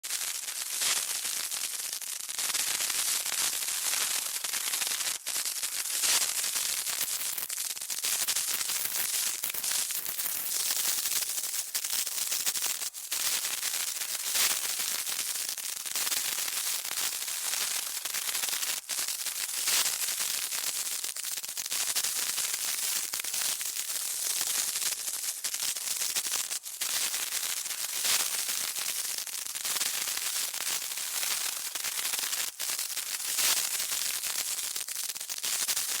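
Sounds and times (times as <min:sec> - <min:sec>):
burning fuse sizzling: 0:05.8 - 0:11.7.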